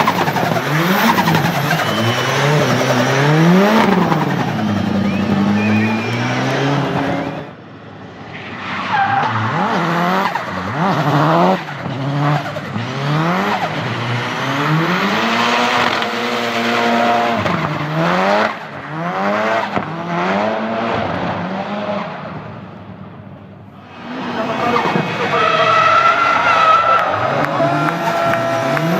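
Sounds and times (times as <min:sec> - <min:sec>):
car engine revving hard: 0:00.0 - 0:07.6, 0:08.9 - 0:22.4, 0:23.9 - 0:28.9
tyres squealing: 0:24.3 - 0:28.9.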